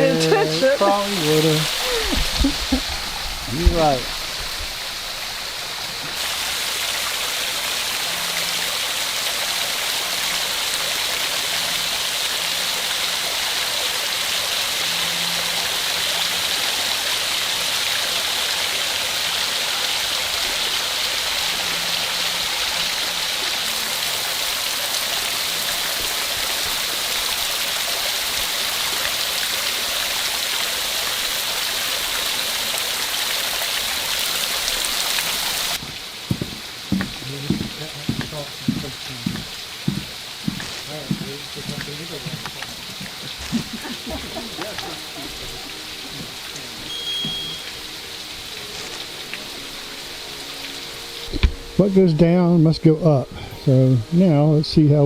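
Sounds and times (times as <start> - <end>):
waterfall splashing: 0.0 - 52.7.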